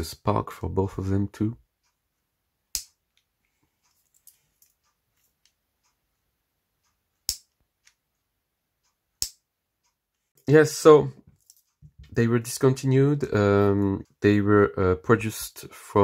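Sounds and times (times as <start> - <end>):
piezo igniter clicking: 7.2 - 7.6.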